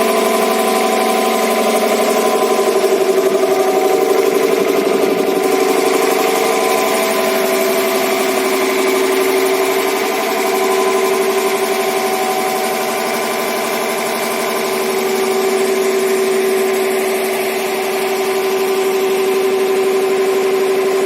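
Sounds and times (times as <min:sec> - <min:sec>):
electric motor humming: 0:00.2 - 0:13.7.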